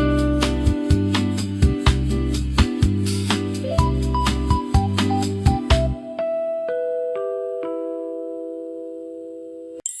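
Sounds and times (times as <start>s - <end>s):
steady bass line: 0.0s - 6.0s
plucked guitar notes: 3.6s - 8.7s.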